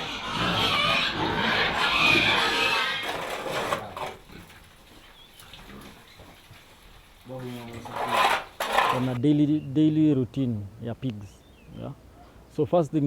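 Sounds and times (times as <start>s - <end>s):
pigs squealing and grunting: 0.0s - 4.7s, 5.4s - 6.3s, 7.7s - 9.2s.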